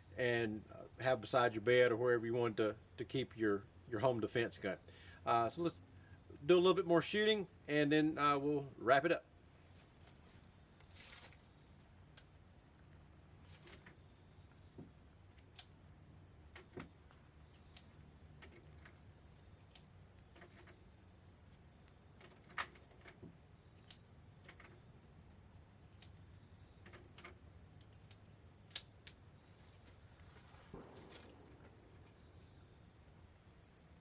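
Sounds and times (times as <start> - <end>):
small metallic clicks and rattles: 16.4 - 20.9, 21.5 - 24.9, 25.9 - 29.2.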